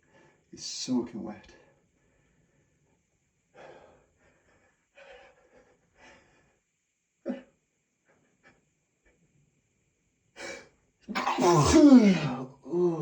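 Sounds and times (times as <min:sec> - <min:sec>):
stifled sneeze: 0:11.1 - 0:12.6.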